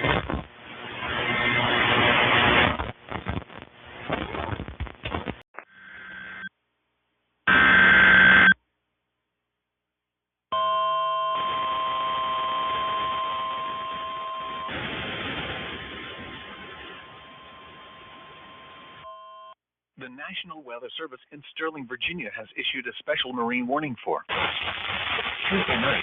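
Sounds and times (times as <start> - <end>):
crackling radio static: 0.0 - 6.5, 7.5 - 8.6, 24.2 - 26.0
steady alarm tone: 7.5 - 8.6, 10.5 - 14.8, 16.1 - 19.6
digital data burst: 24.3 - 26.0.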